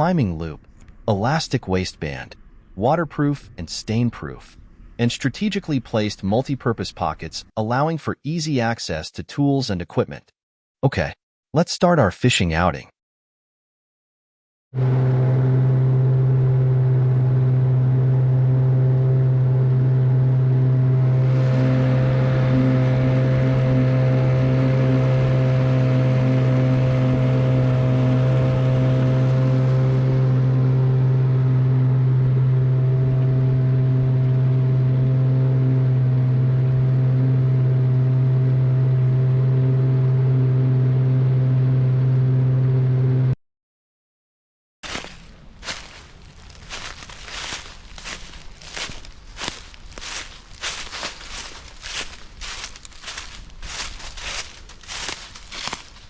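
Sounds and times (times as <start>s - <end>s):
boat motor humming: 14.8s - 43.4s, 44.8s - 56.0s.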